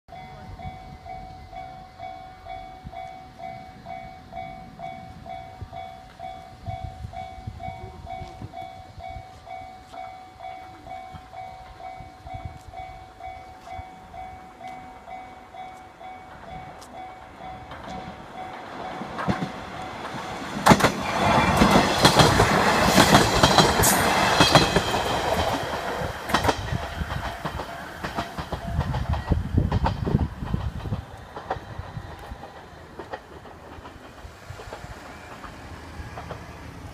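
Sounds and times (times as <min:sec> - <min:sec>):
train passing: 0:00.1 - 0:36.9
train wheels clacking over rail joints: 0:09.9 - 0:36.9.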